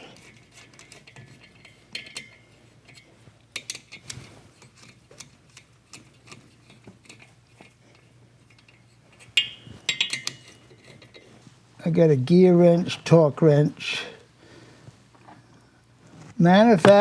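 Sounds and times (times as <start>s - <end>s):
metal clanks: 8.5s - 11.3s, 16.8s - 17.0s.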